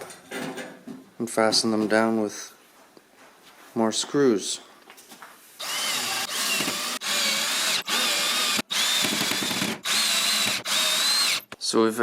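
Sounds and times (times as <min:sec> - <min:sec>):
cordless drill driving screws: 0:05.6 - 0:11.5.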